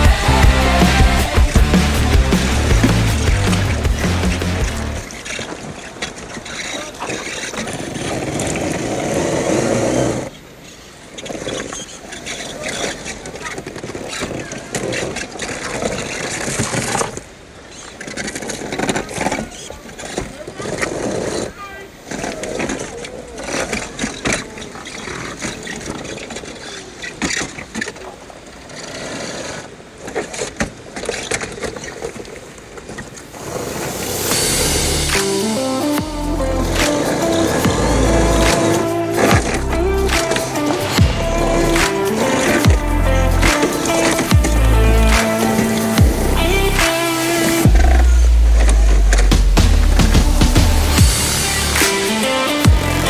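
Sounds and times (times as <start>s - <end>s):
music with heavy low beat: 0.0s - 5.0s, 34.1s - 53.0s
toy car scraping over rocks: 5.1s - 34.3s.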